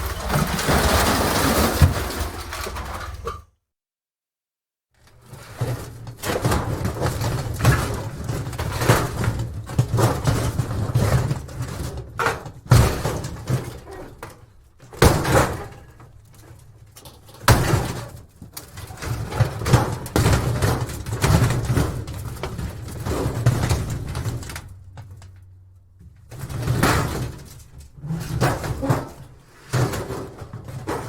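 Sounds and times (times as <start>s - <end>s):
scrap metal rattling and scraping: 0.0s - 3.5s, 15.2s - 31.0s.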